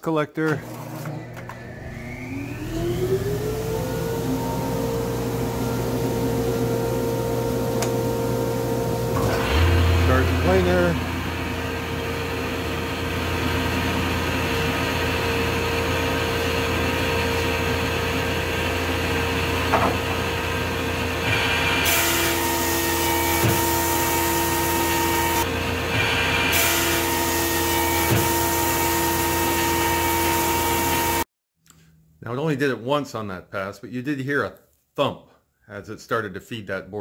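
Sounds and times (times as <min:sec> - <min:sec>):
planer running: 0:00.5 - 0:31.2
dust collector running: 0:00.6 - 0:31.2
planer cutting hiss: 0:21.2 - 0:31.2.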